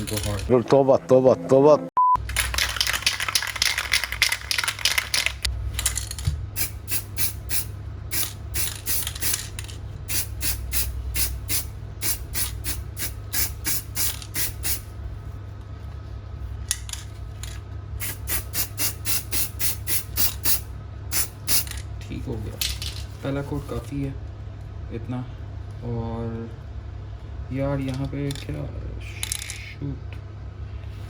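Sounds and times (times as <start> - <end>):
spray paint can hissing: 6.6 - 14.9, 18.0 - 21.8.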